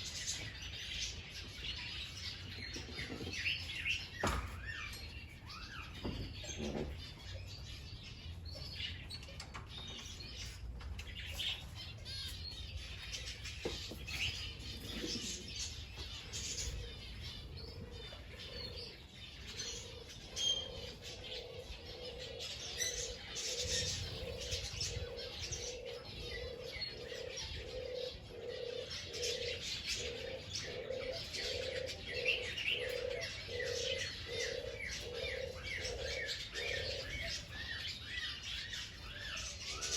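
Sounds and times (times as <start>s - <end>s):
small birds chirping: 0.0s - 39.9s
dove cooing: 13.2s - 39.9s.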